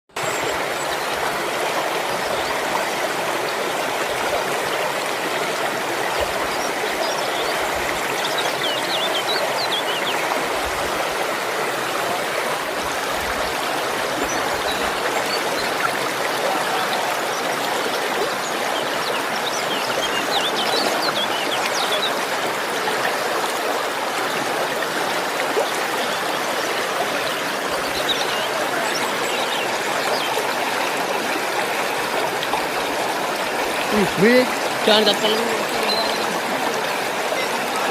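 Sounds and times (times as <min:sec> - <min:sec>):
stream water running: 0:00.1 - 0:37.9.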